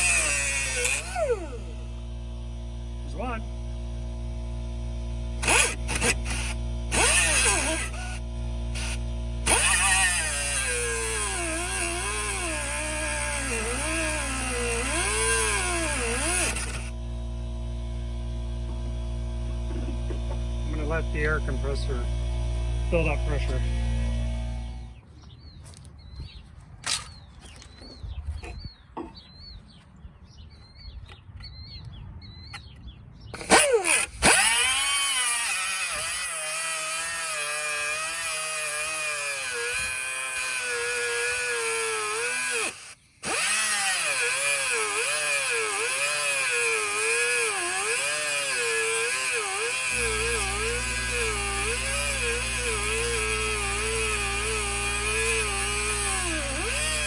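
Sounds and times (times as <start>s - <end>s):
air compressor running: 0.0s - 25.0s, 33.4s - 57.0s
birds chirping: 24.8s - 33.5s.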